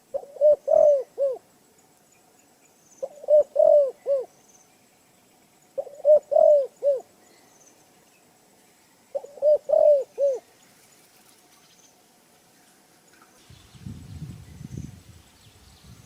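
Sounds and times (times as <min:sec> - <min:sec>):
dove cooing: 0:00.0 - 0:01.5, 0:03.0 - 0:04.4, 0:05.8 - 0:07.1, 0:09.1 - 0:10.5.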